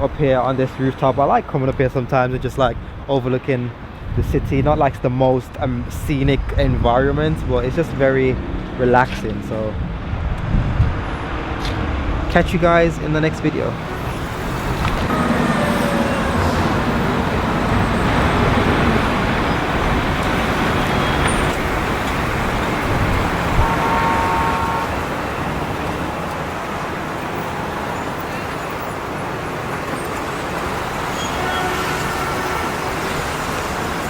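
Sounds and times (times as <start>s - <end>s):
city traffic noise: 0.0s - 34.0s
brief high tone: 23.4s - 25.5s.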